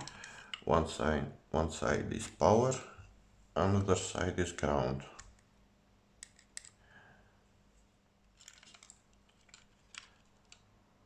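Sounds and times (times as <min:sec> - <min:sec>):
small objects clicking and tapping: 0:06.2 - 0:06.8, 0:08.3 - 0:10.7.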